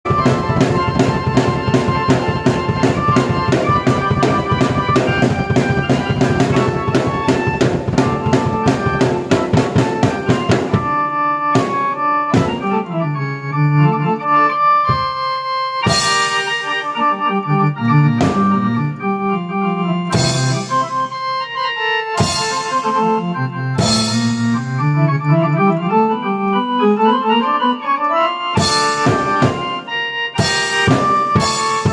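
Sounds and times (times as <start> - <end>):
keyboard chords and melody: 0.0 - 31.9
drum beat: 0.1 - 11.0, 11.6 - 12.8, 14.9 - 15.2, 20.1 - 21.2, 22.2 - 23.1, 23.8 - 24.5, 28.6 - 29.8, 30.4 - 31.9
bass line: 16.7 - 27.6.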